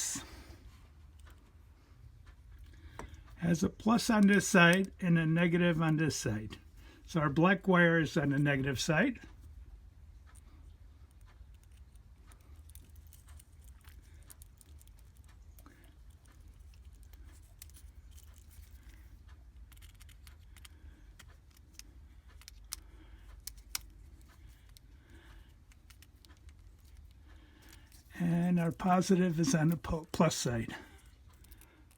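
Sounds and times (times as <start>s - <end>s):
low steady hum: 0.0s - 31.9s
small metallic clicks of wiring: 11.1s - 28.1s.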